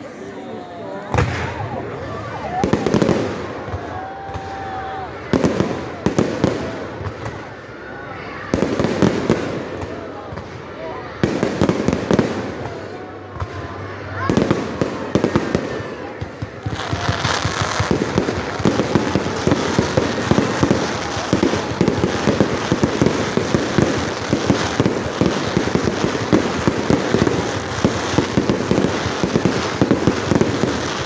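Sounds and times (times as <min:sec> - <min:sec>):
fireworks bangs and crackles: 0:01.0 - 0:31.0.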